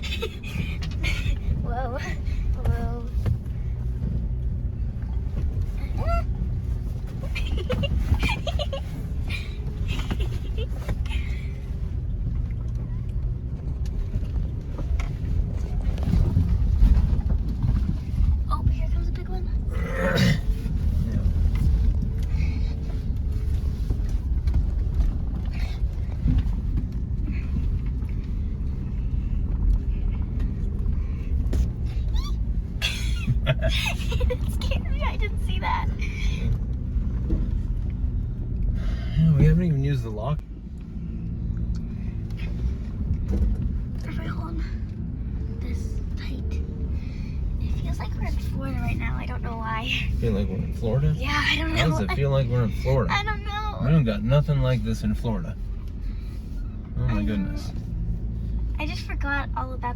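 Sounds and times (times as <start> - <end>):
engine rumbling from inside cabin: 0.0 - 59.9
knocks and rattles of vehicle: 0.0 - 59.9.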